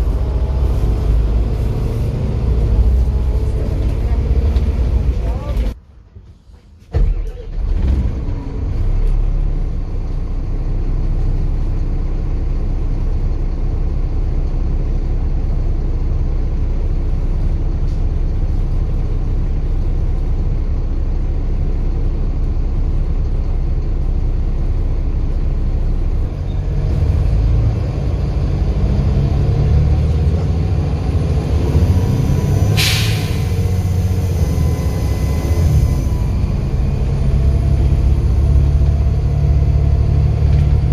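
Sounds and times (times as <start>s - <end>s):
bus diesel engine running: 0.0s - 40.9s
air brake hiss: 32.7s - 34.2s.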